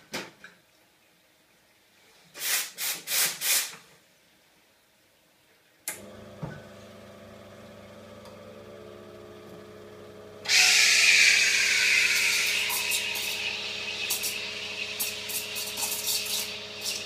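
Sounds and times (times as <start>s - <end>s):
pump motor humming: 5.9s - 17.0s
steam hissing: 10.5s - 17.0s.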